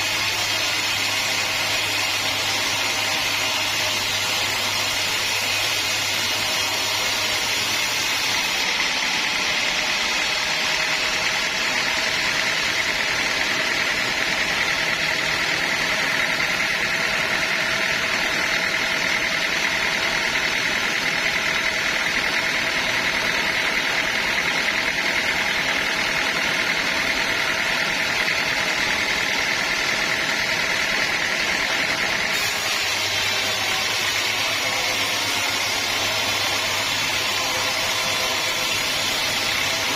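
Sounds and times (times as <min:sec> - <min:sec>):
sawmill blade whining: 0:00.0 - 0:39.9.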